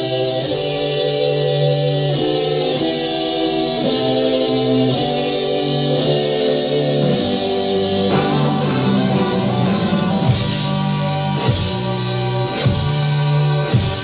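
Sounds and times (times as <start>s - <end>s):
rock music: 0.0s - 14.0s.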